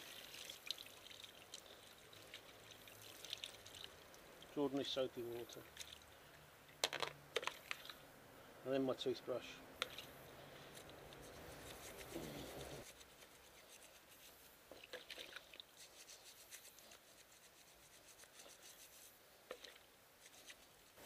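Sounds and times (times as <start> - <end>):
toothbrush scrubbing metal: 11.1 - 14.4, 15.8 - 19.1.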